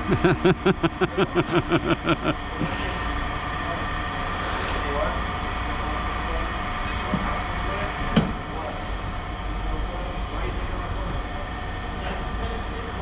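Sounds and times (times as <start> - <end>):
person vocalizing rhythmic sounds: 0.0 - 2.3
low machinery rumble: 0.0 - 13.0.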